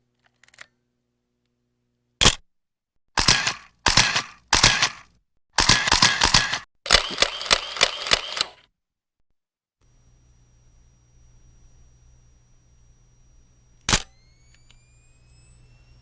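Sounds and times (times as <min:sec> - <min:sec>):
camera shutter clicking: 0:03.2 - 0:08.6, 0:13.8 - 0:15.0.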